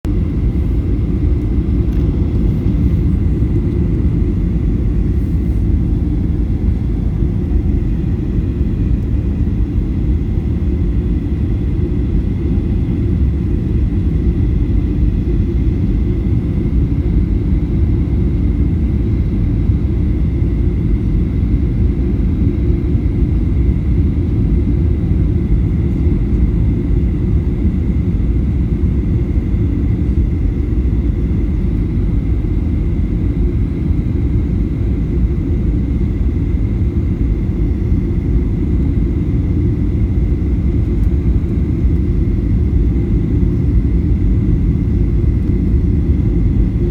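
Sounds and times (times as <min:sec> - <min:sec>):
aircraft low rumble: 0:00.0 - 0:46.9.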